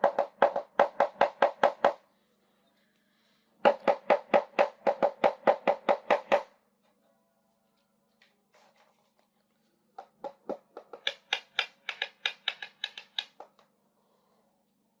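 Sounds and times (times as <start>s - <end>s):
faint low hum: 1.9s - 3.8s, 6.4s - 10.8s, 13.3s - 15.0s
plastic toy pieces clicking: 11.0s - 13.4s.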